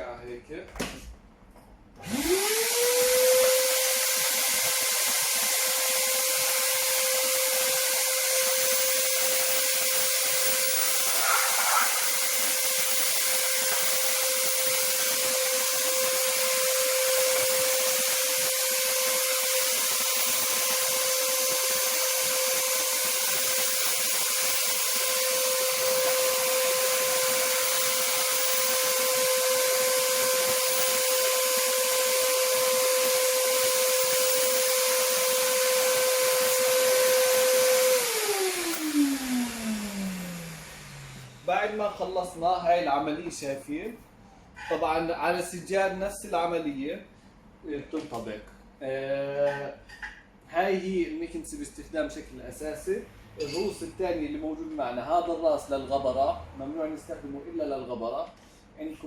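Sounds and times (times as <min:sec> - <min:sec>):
vacuum cleaner motor whine: 0:02.0 - 0:41.8.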